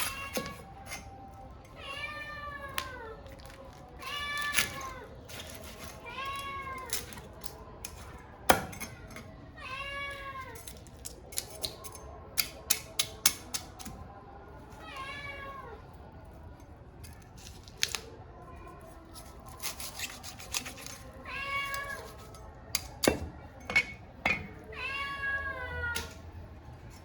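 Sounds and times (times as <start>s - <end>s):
cat meowing: 0.0s - 0.8s, 1.7s - 3.2s, 21.1s - 22.2s, 24.3s - 26.2s.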